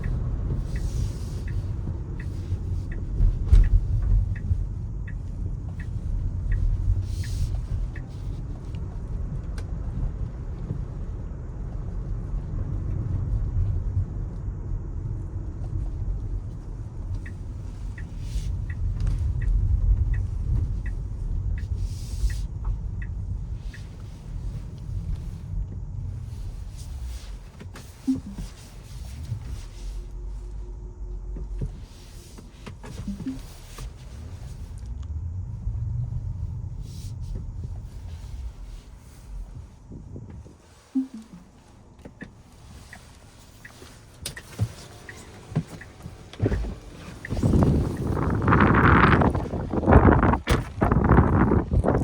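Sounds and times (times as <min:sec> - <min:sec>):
regular ticking: 0:00.0 - 0:08.1, 0:17.2 - 0:25.2, 0:28.0 - 0:28.6
road and tyre rumble: 0:00.0 - 0:52.0.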